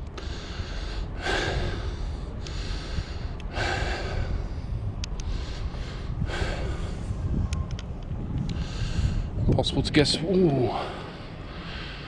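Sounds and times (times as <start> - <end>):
steady low rumble: 0.0 - 12.0
person breathing heavily: 0.1 - 7.2, 8.5 - 9.4, 10.7 - 12.0
faint ticks: 3.3 - 3.6, 5.0 - 5.4.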